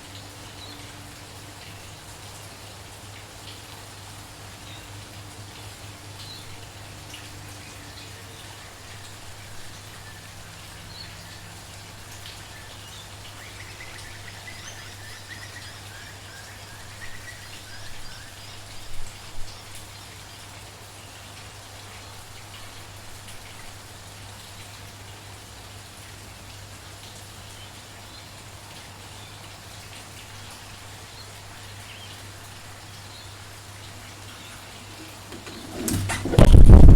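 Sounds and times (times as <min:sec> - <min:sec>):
light rain pattering: 0:00.0 - 0:36.9
birds chirping: 0:31.2 - 0:36.5.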